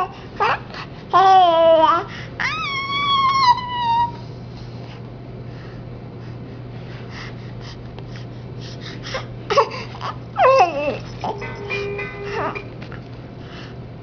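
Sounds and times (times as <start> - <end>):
low hum: 10.8 - 13.4.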